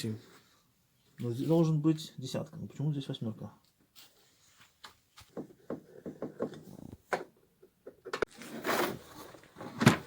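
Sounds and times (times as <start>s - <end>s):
scrape: 8.3s - 9.5s.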